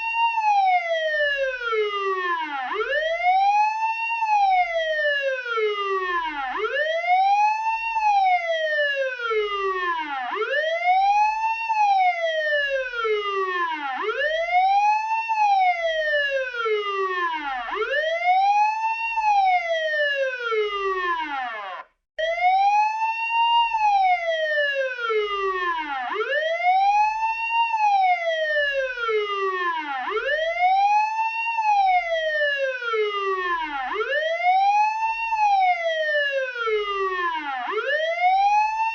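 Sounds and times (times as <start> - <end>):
police siren wailing: 0.0 - 38.9.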